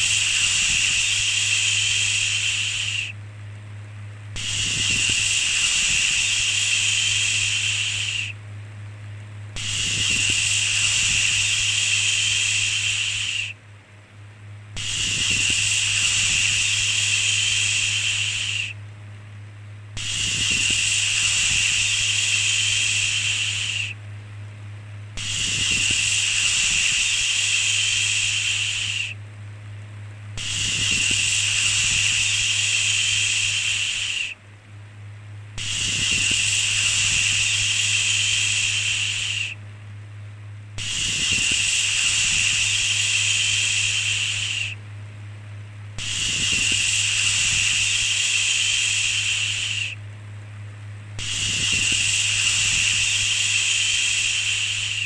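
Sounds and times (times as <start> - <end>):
steady low hum: 0.0 - 55.0
person shushing: 30.4 - 34.4.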